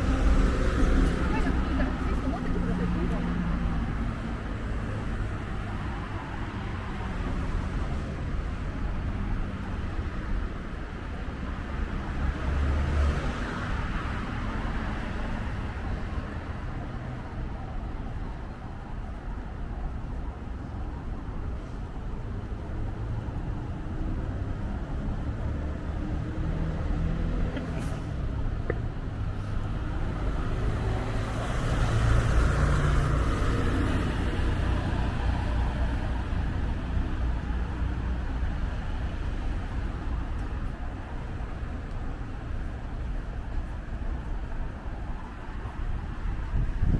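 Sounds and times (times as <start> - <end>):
car passing: 0.0 - 17.3, 21.6 - 46.9
road traffic: 0.0 - 46.9
wind buffeting microphone: 28.1 - 46.9.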